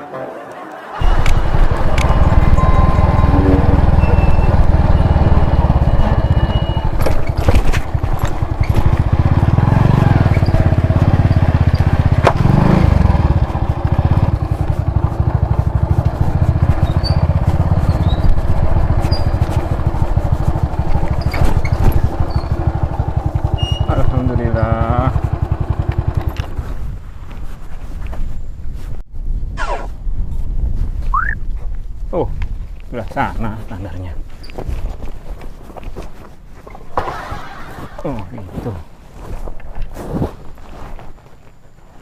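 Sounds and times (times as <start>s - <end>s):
motorcycle engine puttering: 1.0s - 27.6s.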